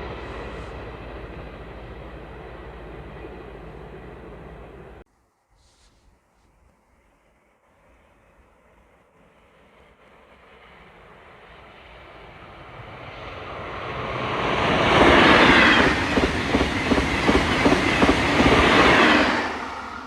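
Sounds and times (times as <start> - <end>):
train rumble: 0.0 - 5.1, 6.5 - 20.0
train wheels clickety-clack: 14.2 - 19.6.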